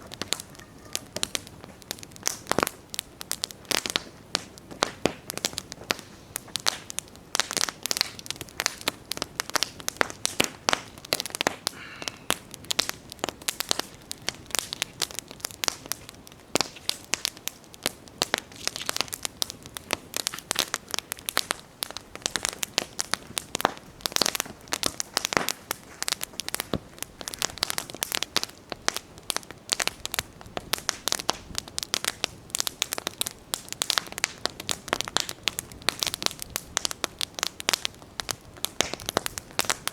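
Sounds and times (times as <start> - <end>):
campfire crackling and popping: 0.0 - 39.9
low hiss of burning: 0.0 - 39.9.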